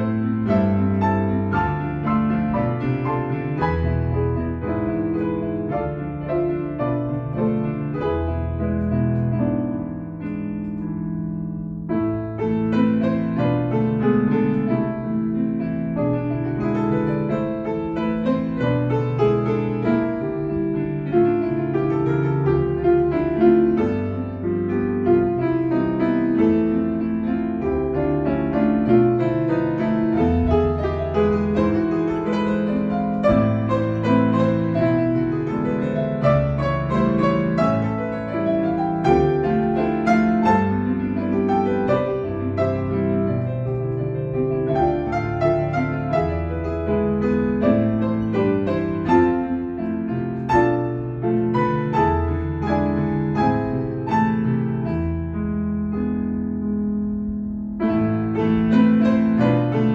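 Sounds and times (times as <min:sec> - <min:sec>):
piano music: 0:00.0 - 0:59.9.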